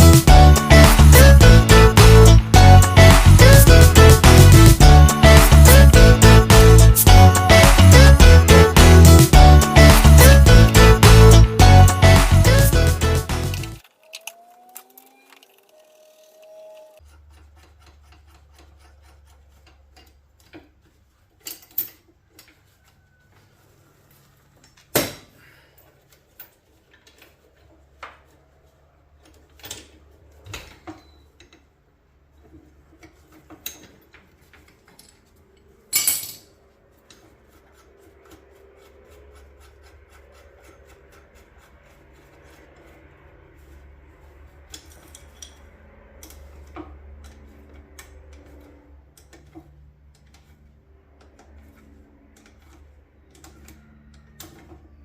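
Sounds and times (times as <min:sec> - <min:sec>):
metal rubbing and scraping: 0:00.0 - 0:24.6, 0:32.3 - 0:55.0
metal chains clinking and clanking: 0:35.9 - 0:36.6.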